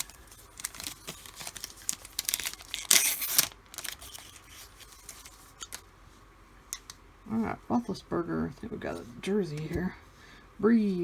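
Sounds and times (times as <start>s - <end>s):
foil wrapper crinkling: 0.0s - 5.9s
foil wrapper ripping: 0.0s - 5.9s.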